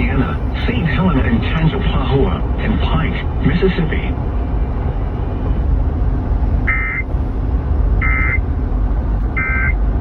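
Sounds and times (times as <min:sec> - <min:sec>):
low radio noise: 0:00.0 - 0:07.4.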